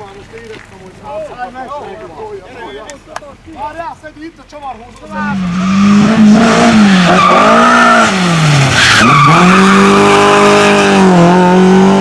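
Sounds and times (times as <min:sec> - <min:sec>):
tyres squealing and skidding: 0:05.1 - 0:10.9
rally car engine revving: 0:05.1 - 0:12.0.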